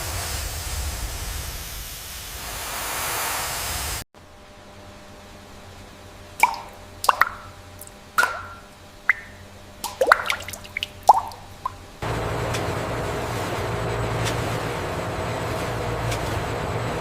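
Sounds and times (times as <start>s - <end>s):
steady hum: 4.2s - 17.0s
water drops plopping: 6.4s - 11.8s.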